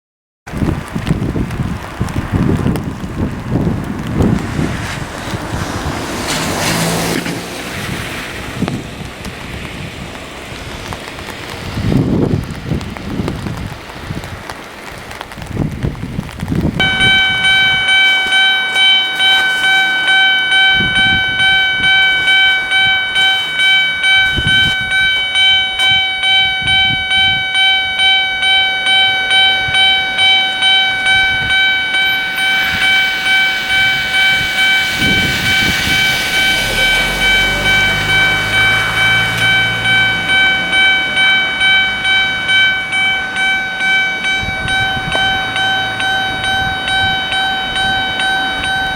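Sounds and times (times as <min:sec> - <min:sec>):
low rumble: 0:00.5 - 0:14.1, 0:15.4 - 0:48.9
train passing: 0:01.8 - 0:15.5, 0:16.7 - 0:48.9
level crossing alarm bell: 0:16.8 - 0:48.9.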